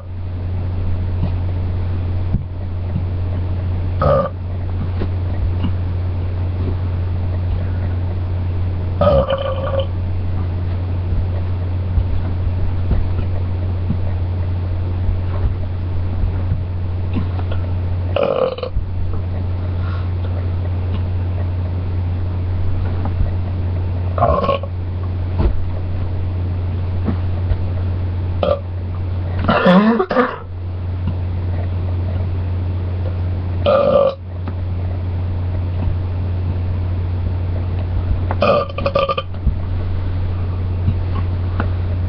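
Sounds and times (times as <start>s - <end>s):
low hum: 0.0s - 42.0s
person belching: 4.0s - 4.4s, 9.0s - 9.9s, 18.2s - 18.7s, 24.2s - 24.7s, 28.4s - 28.6s, 29.5s - 30.5s, 33.6s - 34.2s, 38.4s - 39.3s.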